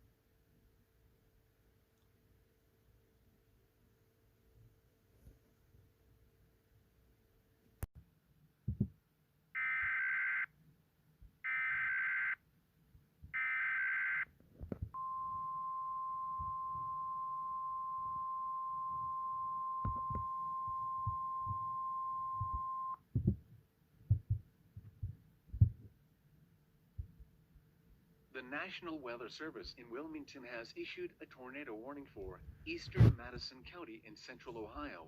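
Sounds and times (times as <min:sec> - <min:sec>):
short low thumps: 0:08.7 - 0:09.0, 0:22.4 - 0:26.0.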